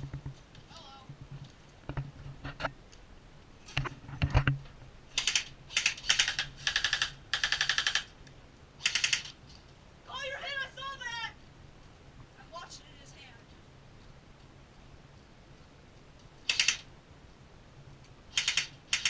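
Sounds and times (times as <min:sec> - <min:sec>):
airsoft gun rapid fire: 0:05.1 - 0:08.1, 0:08.8 - 0:09.4, 0:16.5 - 0:16.9, 0:18.3 - 0:19.0.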